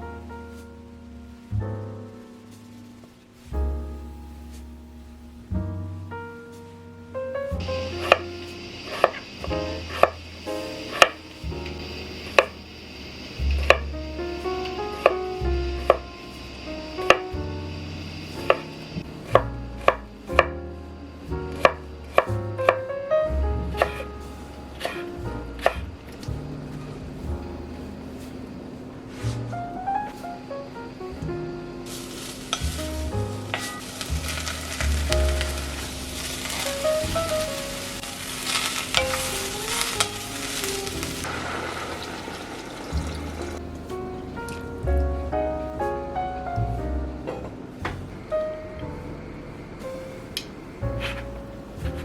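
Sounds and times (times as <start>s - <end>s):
quiet background music: 0.0s - 52.0s
food sizzling in a pan: 31.9s - 43.6s.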